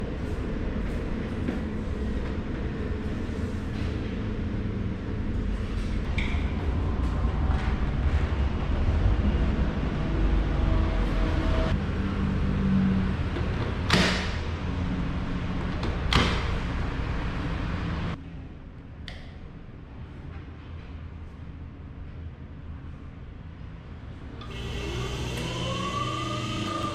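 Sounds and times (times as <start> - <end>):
air compressor running: 24.4 - 26.9.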